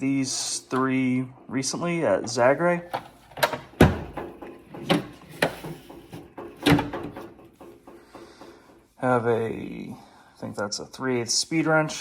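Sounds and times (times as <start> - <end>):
tools rattling: 0.7 - 9.5.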